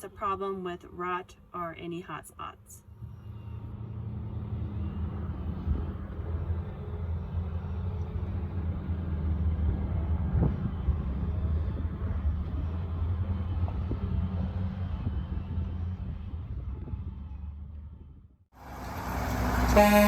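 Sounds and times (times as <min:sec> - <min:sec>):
heavy diesel machinery rumbling: 0:02.9 - 0:18.0, 0:18.6 - 0:20.0.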